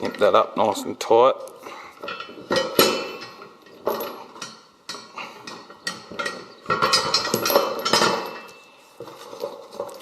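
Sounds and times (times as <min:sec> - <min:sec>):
chain and shackle clinking: 0:02.0 - 0:10.0.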